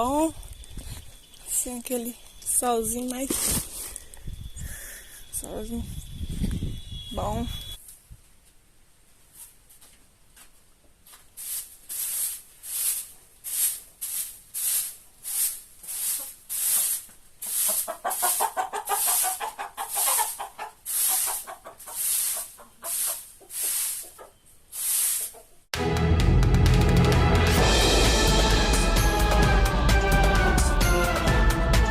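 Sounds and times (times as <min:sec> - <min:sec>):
broom sweeping: 0:11.1 - 0:25.4
chickens clucking: 0:17.4 - 0:25.7.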